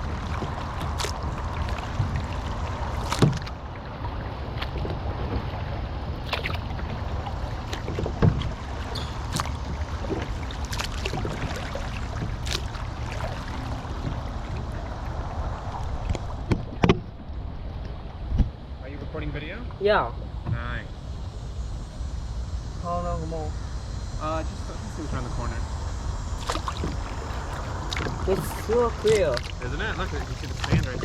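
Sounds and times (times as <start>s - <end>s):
paddle strokes in water: 0.0s - 17.2s, 26.4s - 31.0s
low rumble: 0.0s - 31.0s.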